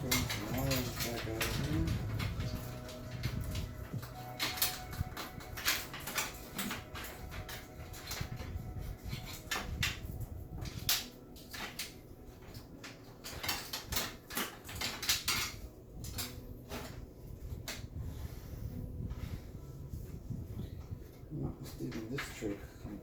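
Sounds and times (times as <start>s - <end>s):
computer parts clicking and rattling: 0.0s - 17.9s.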